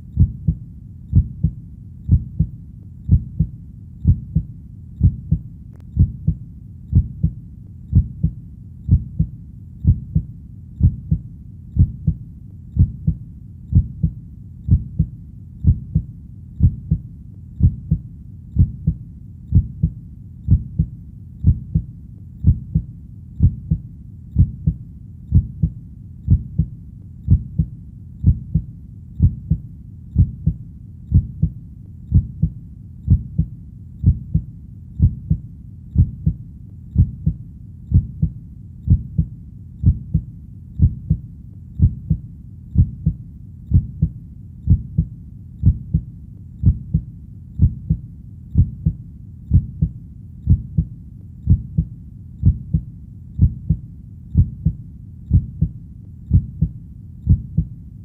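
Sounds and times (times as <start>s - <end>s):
heartbeat thumps: 0.0s - 57.8s
faint low hum: 0.0s - 58.0s.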